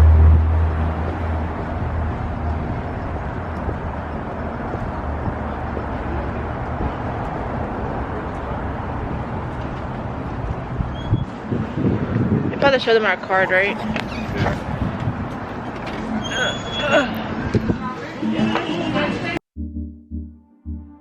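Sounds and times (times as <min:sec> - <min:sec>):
low engine hum: 0:00.0 - 0:12.6
traffic rumble: 0:00.0 - 0:19.4.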